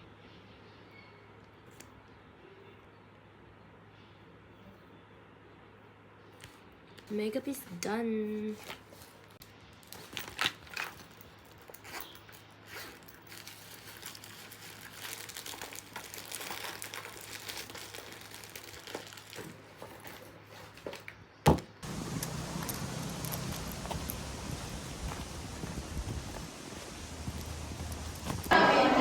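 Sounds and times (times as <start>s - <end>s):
rustling and crinkling: 6.4s - 28.6s
background hiss: 21.8s - 29.0s.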